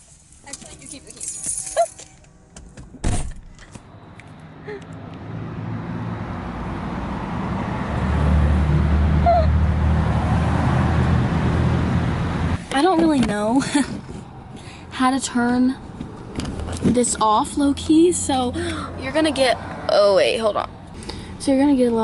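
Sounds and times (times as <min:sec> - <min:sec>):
vehicle engine humming: 0:00.0 - 0:22.0
car door shutting: 0:02.5 - 0:03.8.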